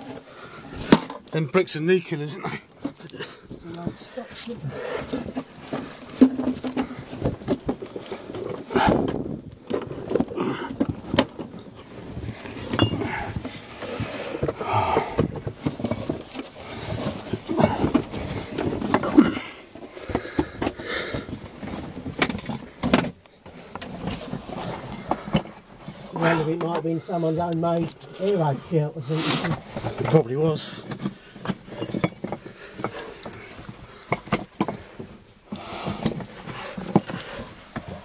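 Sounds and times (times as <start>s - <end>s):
scraping and shuffling on rubble: 0.0s - 38.0s
bricks knocking and clinking: 12.6s - 13.6s, 14.4s - 20.8s, 30.8s - 35.2s.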